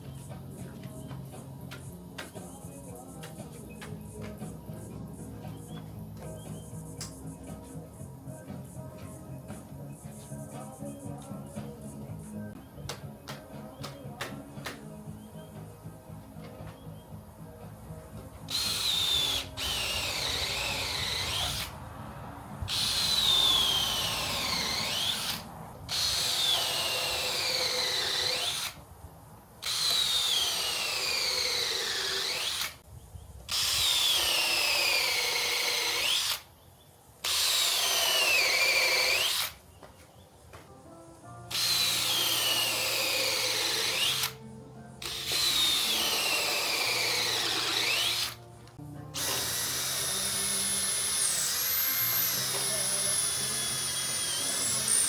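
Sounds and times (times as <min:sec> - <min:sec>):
faint music: 0:00.0 - 0:55.0
power drill driving screws: 0:18.5 - 0:21.7, 0:22.7 - 0:28.8, 0:29.6 - 0:32.8, 0:33.5 - 0:36.5, 0:37.2 - 0:39.6, 0:41.5 - 0:44.4, 0:45.0 - 0:48.4, 0:49.2 - 0:55.0.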